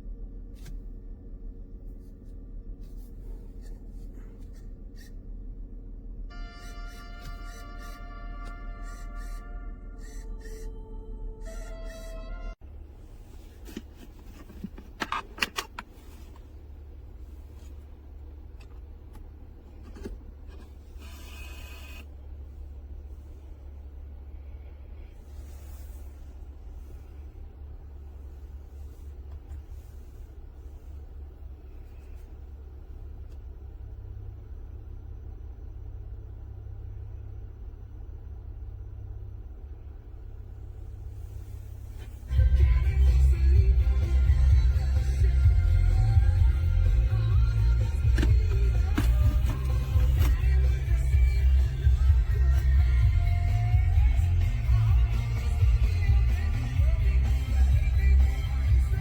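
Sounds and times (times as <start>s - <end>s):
low rumble inside car cabin: 0.0s - 59.0s
steady low hum: 0.0s - 59.0s
brief whirr: 21.0s - 22.1s
music: 42.3s - 59.0s.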